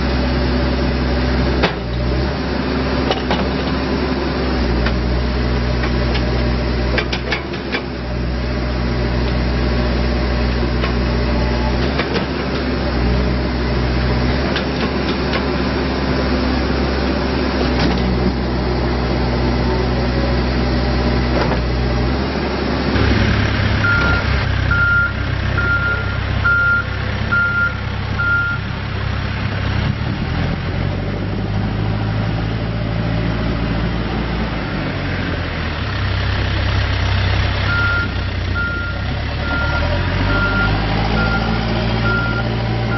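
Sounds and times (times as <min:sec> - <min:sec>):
backhoe diesel engine running: 0:00.0 - 0:42.9
reverse alarm beeping: 0:23.8 - 0:28.6, 0:37.7 - 0:42.5.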